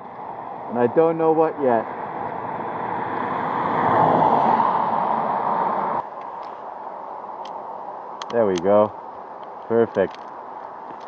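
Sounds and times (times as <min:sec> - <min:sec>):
vehicle passing road noise: 0:00.0 - 0:11.0.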